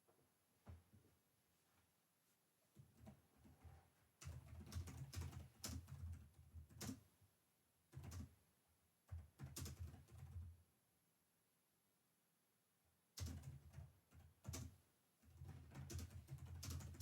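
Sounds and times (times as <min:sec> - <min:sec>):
typing on a keyboard: 0:02.8 - 0:07.1, 0:07.9 - 0:08.4, 0:09.1 - 0:10.6, 0:13.2 - 0:17.0.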